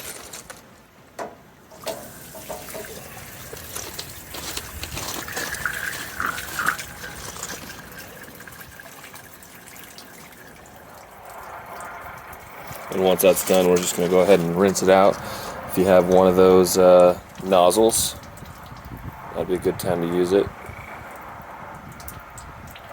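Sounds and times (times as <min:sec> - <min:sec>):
water splattering onto ground: 0:01.7 - 0:19.3.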